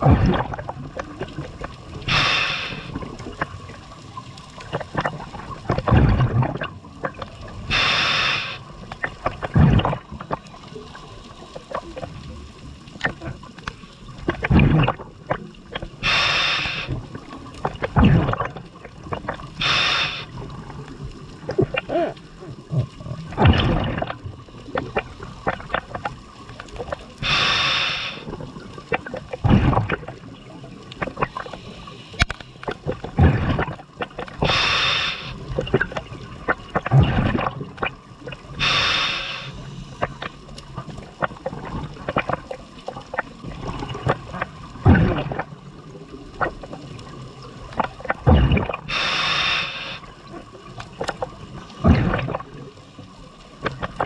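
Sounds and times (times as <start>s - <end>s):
exhaled air bubbling: 0.0s - 54.0s
small clicks and crackles: 0.0s - 54.0s
regulator inhale hiss: 2.0s - 3.1s, 7.7s - 8.7s, 16.0s - 17.2s, 19.6s - 20.4s, 27.2s - 28.3s, 31.4s - 32.7s, 34.4s - 35.5s, 38.6s - 40.2s, 48.9s - 50.2s.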